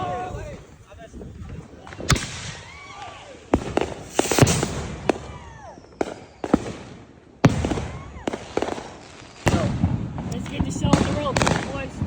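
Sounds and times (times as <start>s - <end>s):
fireworks hissing: 0.0s - 6.8s
fireworks bangs with crackling: 0.0s - 12.0s.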